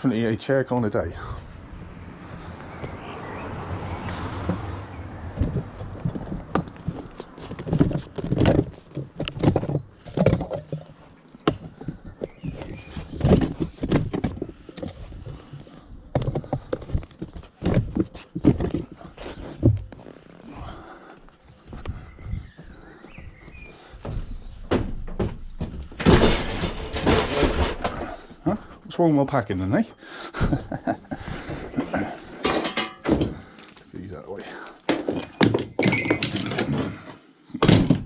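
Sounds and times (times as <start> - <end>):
clanks knocks and thuds of objects: 4.4 - 20.0, 23.2 - 28.4, 31.5 - 33.8, 34.4 - 38.0.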